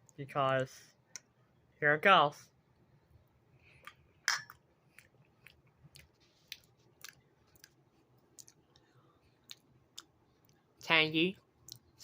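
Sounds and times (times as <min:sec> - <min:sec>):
person chewing food: 0:03.6 - 0:10.8, 0:11.5 - 0:12.0.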